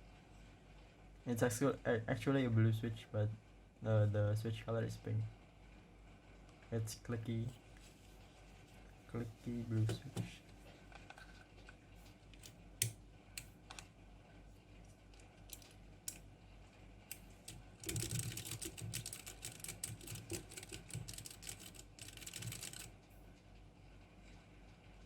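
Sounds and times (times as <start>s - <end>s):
mechanical keyboard typing: 15.2s - 16.2s, 17.1s - 22.9s.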